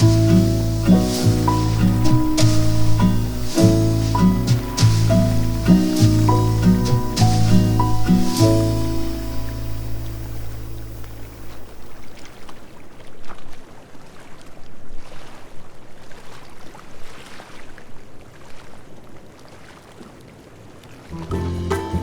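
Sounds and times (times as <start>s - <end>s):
music: 0.0s - 11.2s, 21.2s - 22.0s
sea waves breaking on beach: 0.0s - 21.1s.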